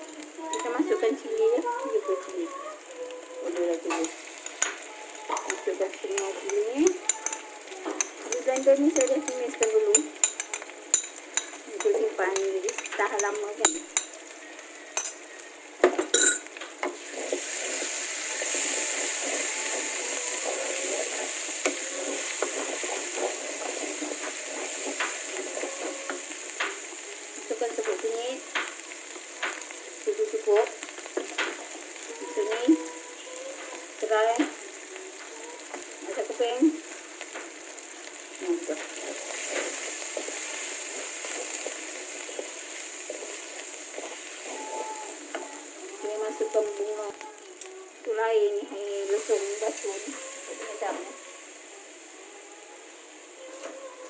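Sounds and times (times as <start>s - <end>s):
paste sizzling in oil: 0.0s - 54.0s
stirring scrape and clatter: 3.9s - 14.2s, 16.8s - 27.0s, 38.1s - 46.5s
utensil clinking against pan: 3.9s - 14.2s, 15.0s - 15.3s, 15.9s - 16.5s.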